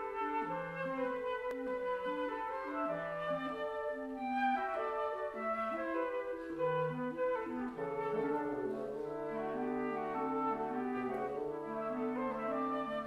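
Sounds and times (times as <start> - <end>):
woodwind quintet playing: 0.0 - 13.0.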